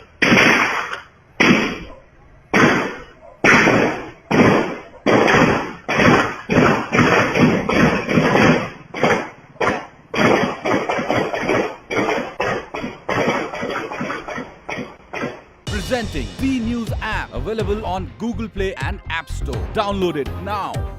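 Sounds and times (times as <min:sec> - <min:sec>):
assault rifle gunfire: 0:02.5 - 0:15.4.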